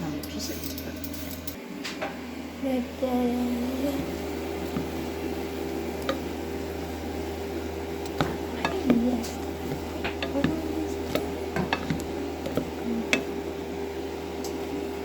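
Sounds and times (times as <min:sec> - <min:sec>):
kitchen hum: 0:00.0 - 0:15.0
cooking clicks and knocks: 0:03.8 - 0:15.0.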